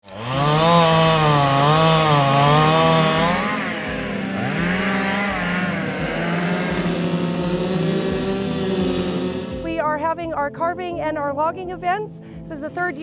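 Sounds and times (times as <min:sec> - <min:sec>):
chainsaw cutting wood: 0:00.0 - 0:09.8.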